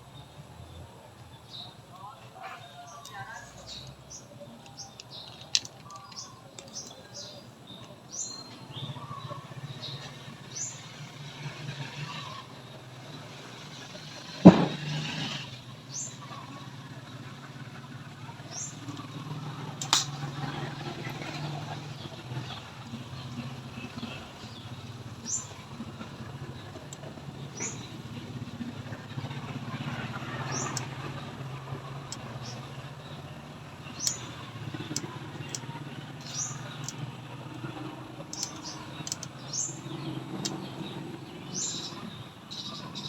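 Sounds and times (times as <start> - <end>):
sharp knock: 14.5 - 14.9.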